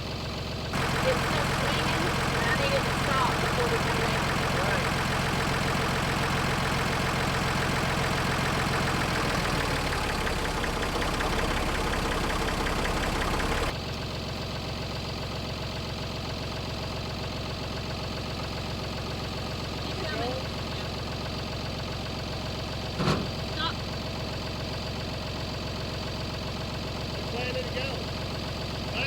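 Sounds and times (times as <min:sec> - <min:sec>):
engine running: 0:00.0 - 0:14.0.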